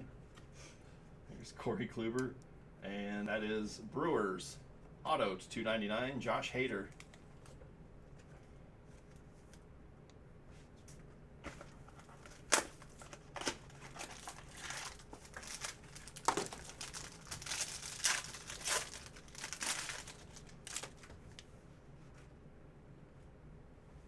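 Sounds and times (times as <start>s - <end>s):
packaging crinkling and tearing: 11.9s - 21.4s.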